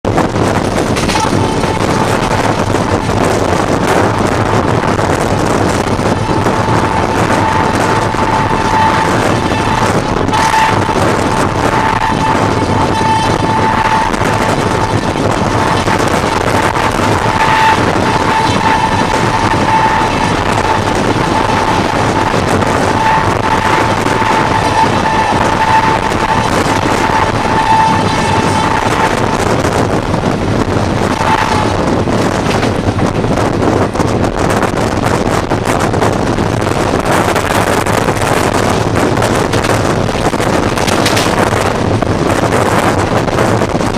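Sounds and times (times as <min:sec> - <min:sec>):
rapid rail clatter: 0:00.0 - 0:43.9
train rumbling at speed: 0:00.0 - 0:43.9
wind on microphone: 0:00.0 - 0:43.9
locomotive horn blasts: 0:00.1 - 0:43.9.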